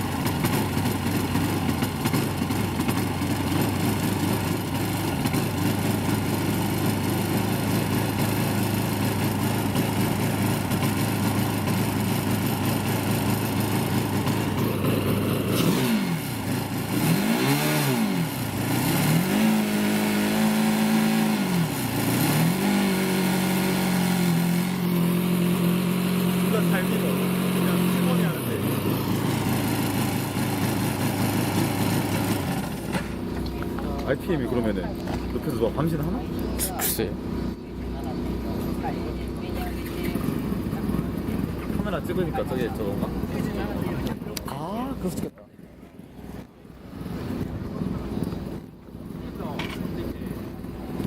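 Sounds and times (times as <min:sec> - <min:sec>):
race car engine idling and revving: 0:00.0 - 0:51.0.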